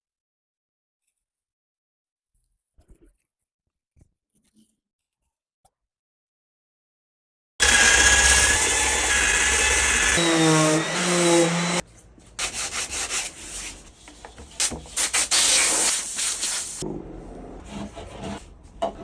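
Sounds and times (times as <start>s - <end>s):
loud pitched hum: 7.6s - 11.8s
sandpaper rubbing on resin: 12.4s - 13.9s, 14.6s - 16.8s.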